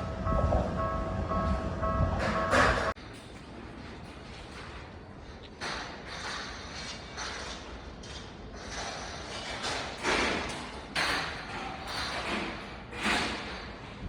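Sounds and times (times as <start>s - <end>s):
train passing over crossing: 0.0s - 3.0s.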